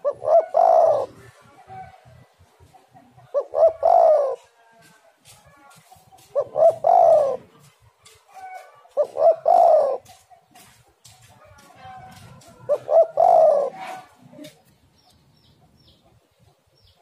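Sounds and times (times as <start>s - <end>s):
dove cooing: 0.0s - 4.5s, 6.2s - 10.2s, 12.1s - 14.6s.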